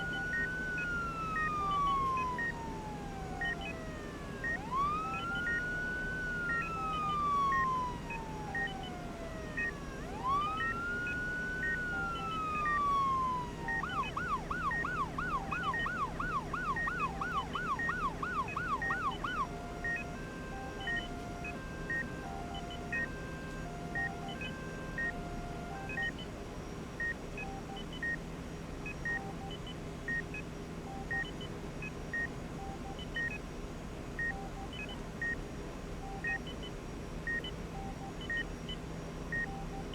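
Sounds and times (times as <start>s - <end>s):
monitor alarm tones: 0.0s - 26.2s
emergency vehicle siren: 0.0s - 26.5s
steady low hum: 0.0s - 27.2s.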